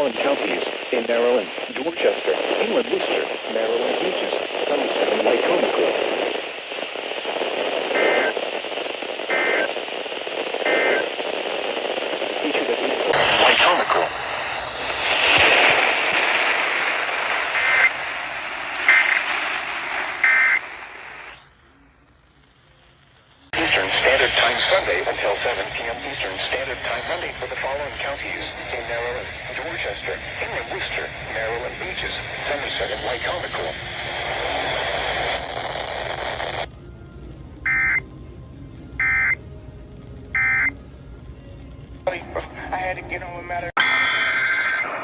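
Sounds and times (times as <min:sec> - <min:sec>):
steady hiss: 0:00.0 - 0:43.7
buzzy data tone bursts: 0:13.1 - 0:36.7
warbling data bursts: 0:13.2 - 0:21.6.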